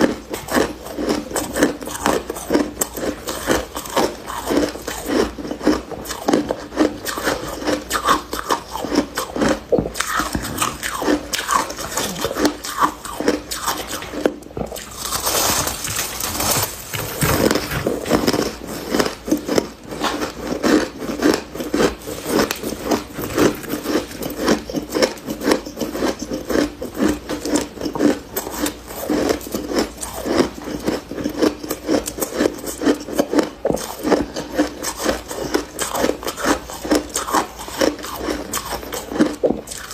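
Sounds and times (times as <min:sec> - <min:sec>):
frost being chewed: 0:00.0 - 0:39.9.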